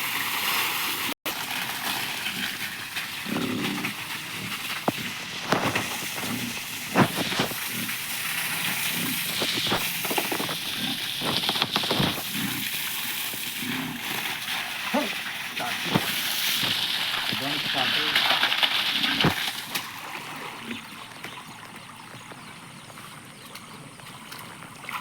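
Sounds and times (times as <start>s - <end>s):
pigs grunting: 2.1s - 19.4s.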